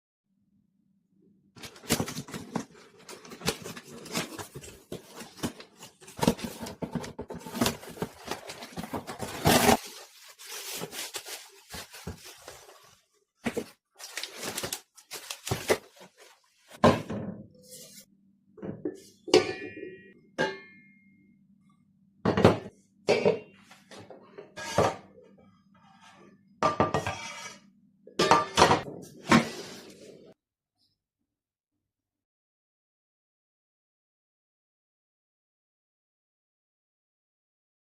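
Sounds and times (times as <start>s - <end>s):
rustling and clattering: 1.7s - 17.3s
pots and lids knocking: 28.2s - 28.9s.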